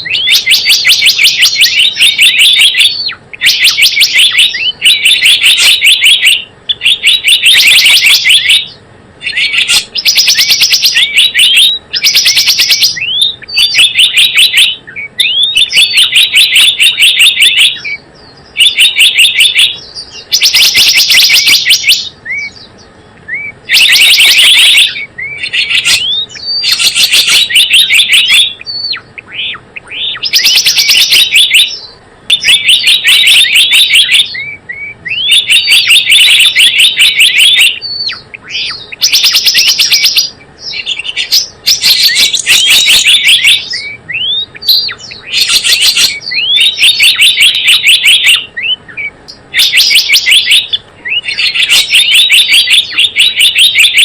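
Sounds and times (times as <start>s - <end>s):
bird chattering chirps: 0.0s - 54.0s.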